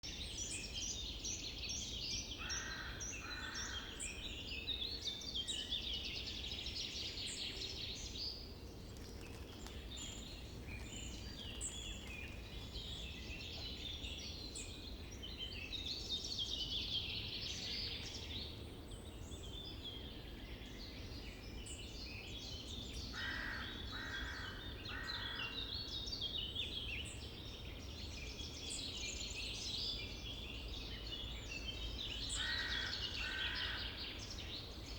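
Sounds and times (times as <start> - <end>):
songbirds singing: 0.0 - 34.9.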